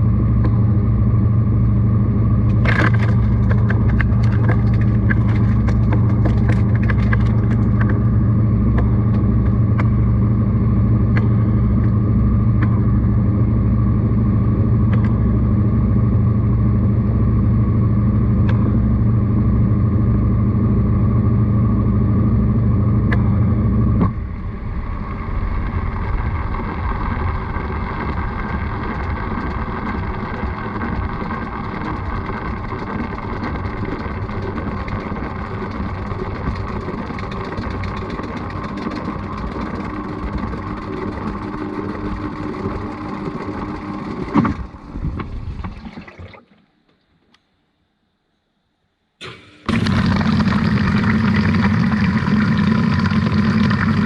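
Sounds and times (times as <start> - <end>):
washing machine running: 0.0 - 46.7, 49.2 - 54.0
churning water: 2.3 - 12.0, 24.0 - 46.7, 49.2 - 54.0.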